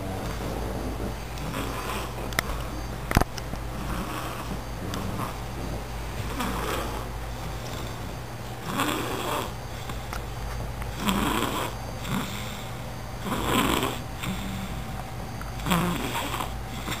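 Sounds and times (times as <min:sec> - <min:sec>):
baby snoring: 0:00.0 - 0:02.3, 0:03.7 - 0:05.4, 0:06.2 - 0:07.1, 0:08.6 - 0:09.6, 0:11.0 - 0:14.9, 0:15.6 - 0:17.0
steady low hum: 0:00.0 - 0:17.0.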